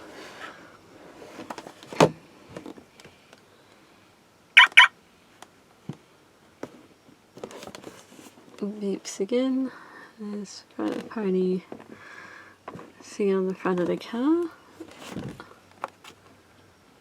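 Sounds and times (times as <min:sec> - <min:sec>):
electronic toy beeps: 0:04.6 - 0:04.9.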